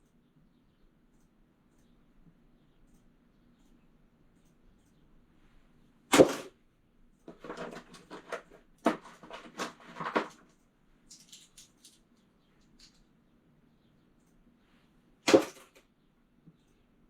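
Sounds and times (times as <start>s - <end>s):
sharp knock: 6.1s - 6.5s, 15.3s - 15.8s.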